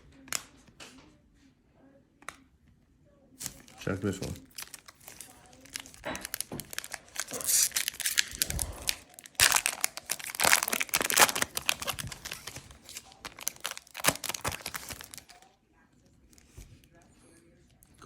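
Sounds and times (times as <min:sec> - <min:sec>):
foil wrapper crinkling and tearing: 0:03.4 - 0:15.5.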